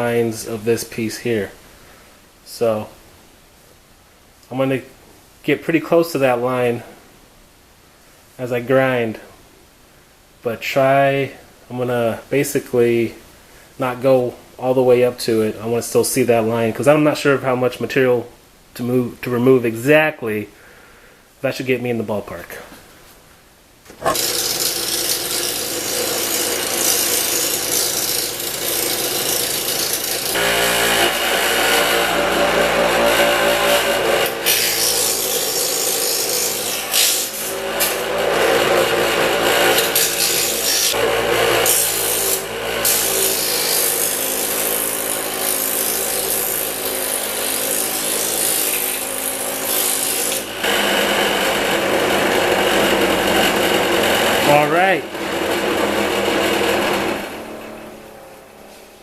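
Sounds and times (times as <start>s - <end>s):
power grinder grinding metal: 23.9s - 57.9s.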